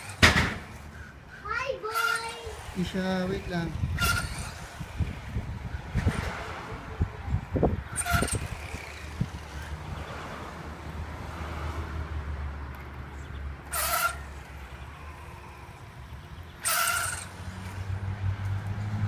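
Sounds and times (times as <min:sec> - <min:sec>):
rc car harsh pitched bursts: 0:01.6 - 0:02.8, 0:03.8 - 0:04.9, 0:07.9 - 0:09.2, 0:13.7 - 0:14.4, 0:16.6 - 0:17.5.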